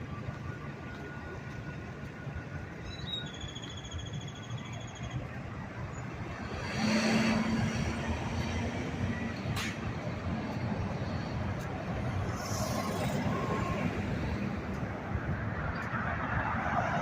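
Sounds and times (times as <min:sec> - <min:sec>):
heavy vehicle passing: 0:06.1 - 0:15.2.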